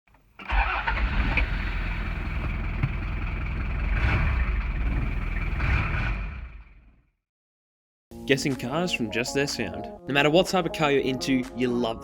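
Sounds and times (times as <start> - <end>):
car engine running: 0.6 - 7.0.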